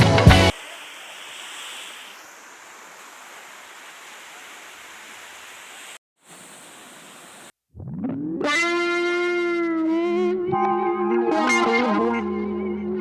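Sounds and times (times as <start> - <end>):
rock music: 0.0 - 0.5.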